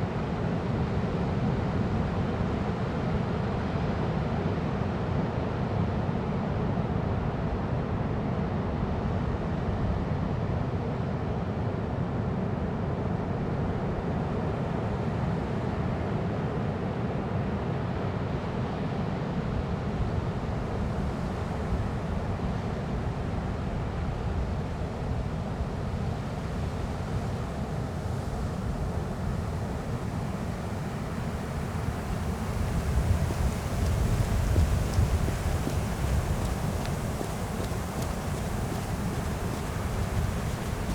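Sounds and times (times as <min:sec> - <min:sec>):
wind: 0:00.0 - 0:40.9
ocean waves rolling in: 0:28.0 - 0:40.9.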